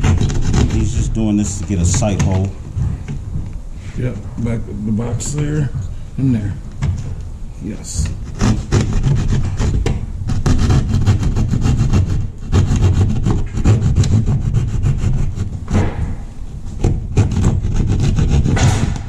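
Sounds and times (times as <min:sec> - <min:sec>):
saw cutting drywall: 0:00.0 - 0:01.6, 0:08.2 - 0:16.0, 0:16.8 - 0:19.0.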